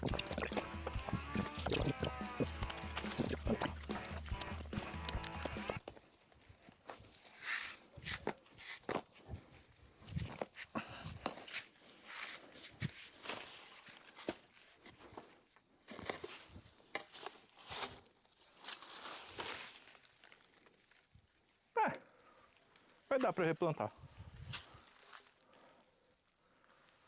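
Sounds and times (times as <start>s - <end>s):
footsteps crunching dry leaves: 17.2s - 20.9s.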